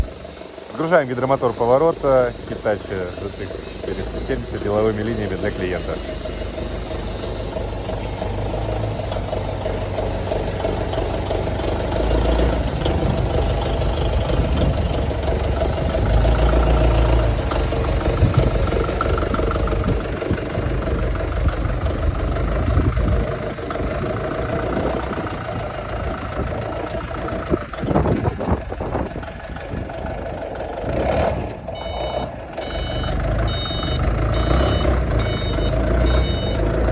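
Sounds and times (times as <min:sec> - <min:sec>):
vehicle engine rumbling: 0:00.0 - 0:36.9
reversing alarm beeps: 0:31.7 - 0:36.8.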